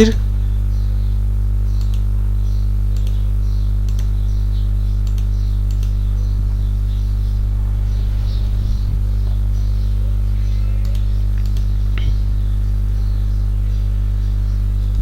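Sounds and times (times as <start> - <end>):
electrical mains hum: 0.0 - 15.0
faint clicks: 1.7 - 2.1, 2.9 - 4.2, 5.0 - 6.0, 10.8 - 12.2.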